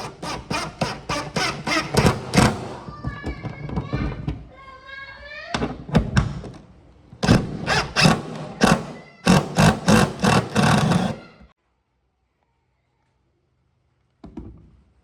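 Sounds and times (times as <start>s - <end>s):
power tool short bursts: 7.6s - 11.3s.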